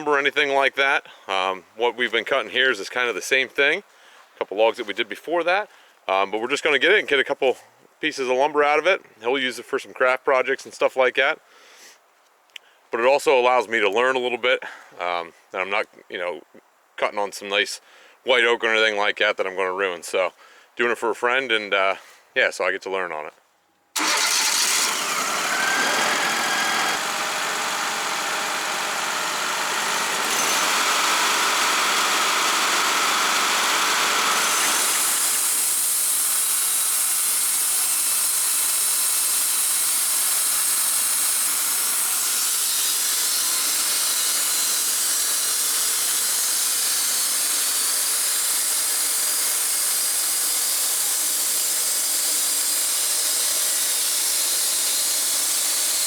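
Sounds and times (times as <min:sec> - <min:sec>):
band sawmill hissing: 0:24.0 - 0:56.0.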